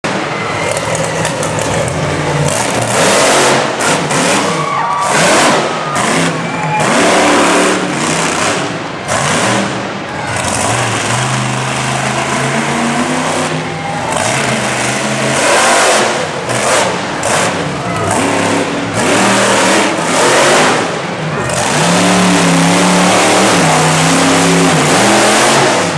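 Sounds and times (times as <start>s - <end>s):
monster truck engine revving: 0.0s - 25.9s.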